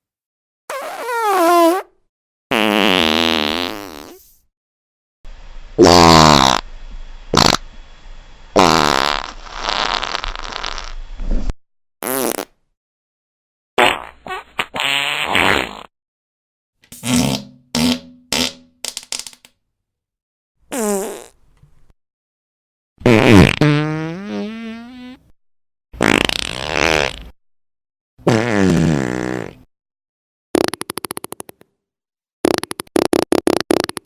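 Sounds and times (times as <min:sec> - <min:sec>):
fart sound effects: 0:00.7 - 0:01.9, 0:02.5 - 0:04.4, 0:05.8 - 0:06.6, 0:07.3 - 0:07.6, 0:08.6 - 0:11.0, 0:12.0 - 0:12.5, 0:13.8 - 0:15.9, 0:17.0 - 0:18.7, 0:20.7 - 0:21.4, 0:23.0 - 0:25.2, 0:26.0 - 0:27.3, 0:28.2 - 0:29.7, 0:30.6 - 0:31.5, 0:32.4 - 0:34.0.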